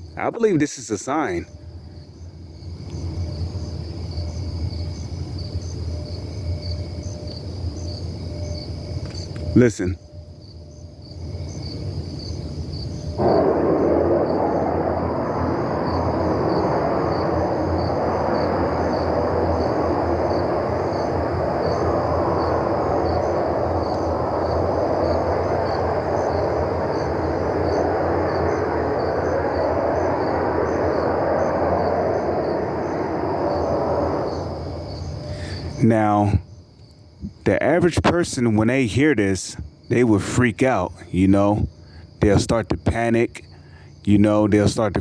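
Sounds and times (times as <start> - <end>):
crickets chirping: 0.0 - 45.0
loud steady roar: 13.2 - 34.7.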